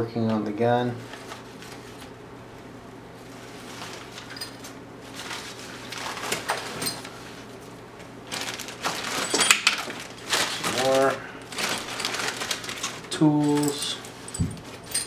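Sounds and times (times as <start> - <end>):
waxed paper crinkling: 1.0 - 2.2, 3.2 - 4.4, 5.0 - 14.8
small metal parts clinking: 8.8 - 11.0, 11.7 - 15.0.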